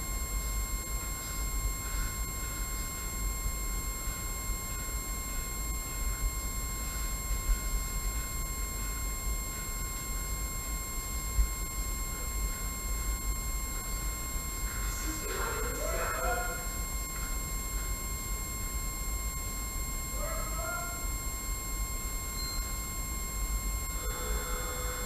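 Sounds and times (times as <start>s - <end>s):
high electronic whine: 10.4s - 25.0s.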